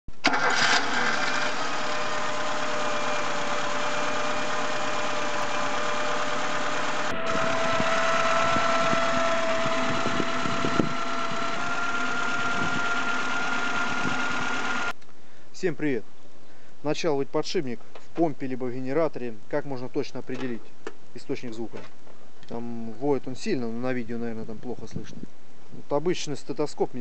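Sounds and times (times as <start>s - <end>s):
car engine idling: 0.2s - 14.9s
bearing whine: 0.8s - 14.9s.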